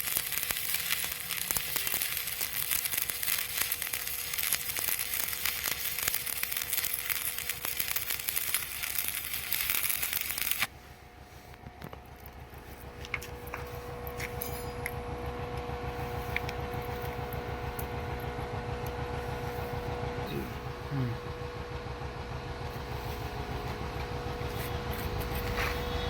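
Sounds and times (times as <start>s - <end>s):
welding arc crackling: 0.0s - 10.7s.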